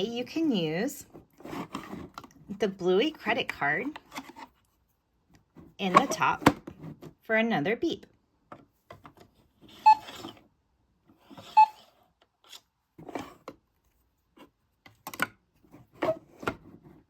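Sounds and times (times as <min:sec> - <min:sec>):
toy cash register beeping: 0:09.7 - 0:10.3, 0:11.4 - 0:11.9.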